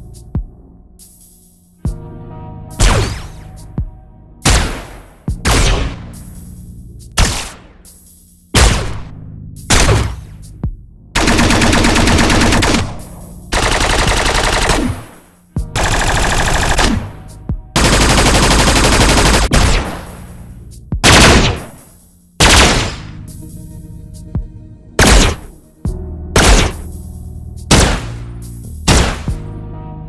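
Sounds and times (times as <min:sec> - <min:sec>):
energy weapon single blasts: 0:02.8 - 0:03.5, 0:09.7 - 0:10.4
sci-fi energy weapon automatic fire: 0:09.7 - 0:10.3, 0:11.2 - 0:15.2, 0:15.8 - 0:17.2, 0:17.8 - 0:20.1, 0:21.0 - 0:21.8, 0:22.4 - 0:23.0, 0:25.0 - 0:25.5, 0:26.4 - 0:26.8, 0:27.7 - 0:28.2, 0:28.9 - 0:29.3.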